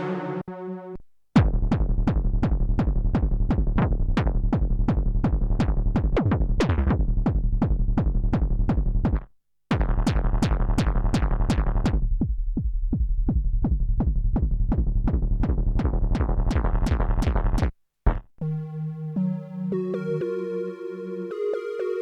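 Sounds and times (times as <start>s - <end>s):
sustained synthesizer chord: 18.4s - 22.0s.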